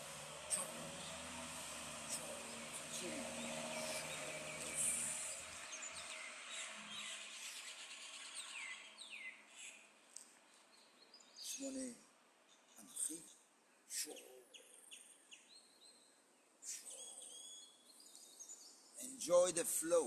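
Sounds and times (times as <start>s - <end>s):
low steady hum: 0.0s - 7.4s
small birds chirping: 0.0s - 19.9s.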